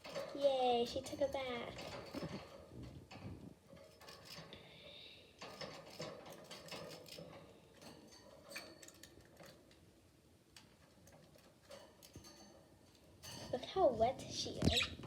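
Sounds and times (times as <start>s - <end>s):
bird chirp: 14.6s - 15.0s.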